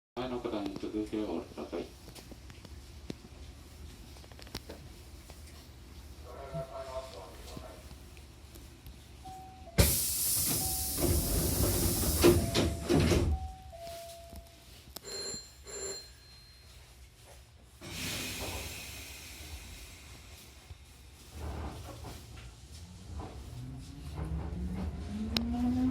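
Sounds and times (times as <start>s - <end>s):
short beeps: 9.3s - 11.2s, 12.2s - 16.7s
train doors air release: 9.7s - 13.4s, 17.8s - 20.6s.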